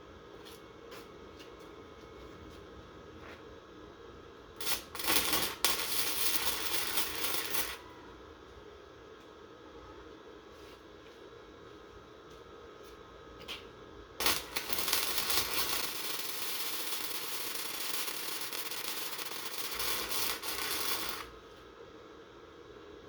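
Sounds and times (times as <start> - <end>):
welding arc crackling sizzle: 4.6 - 7.8, 14.2 - 21.6.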